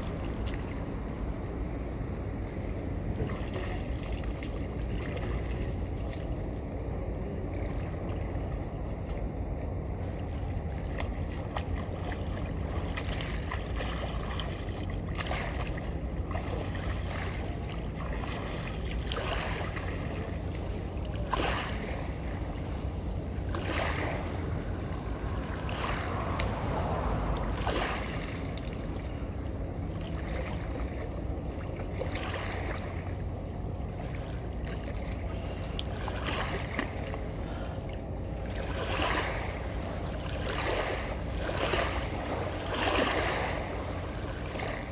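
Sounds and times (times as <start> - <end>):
sea water splashing: 0.0 - 1.8, 2.6 - 44.9
low rumble: 17.2 - 31.9.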